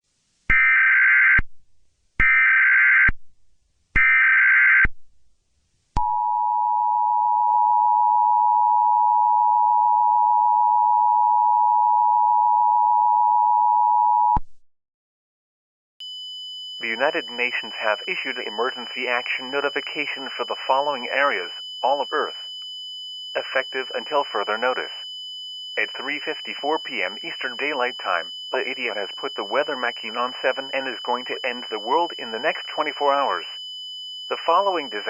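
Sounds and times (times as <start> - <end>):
data tone bursts: 16.0 - 22.6, 23.2 - 33.6, 34.2 - 35.0
two-tone alert beep: 25.8 - 33.3.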